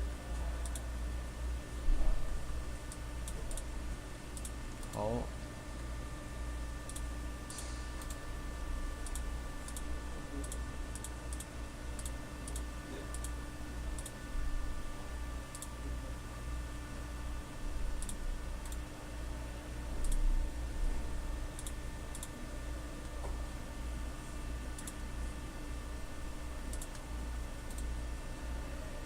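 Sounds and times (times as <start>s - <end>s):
low electrical hum: 0.0s - 29.0s
computer mouse clicks: 0.6s - 0.8s, 2.9s - 3.7s, 4.4s - 5.1s, 6.9s - 8.2s, 9.0s - 13.4s, 14.0s - 14.2s, 15.5s - 15.7s, 18.0s - 18.8s, 20.0s - 20.2s, 21.6s - 22.3s, 24.8s - 25.0s, 26.7s - 27.0s, 27.7s - 27.9s.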